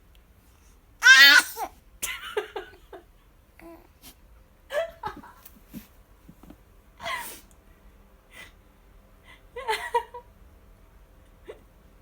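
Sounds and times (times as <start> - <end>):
baby sneezing: 1.0 - 1.7.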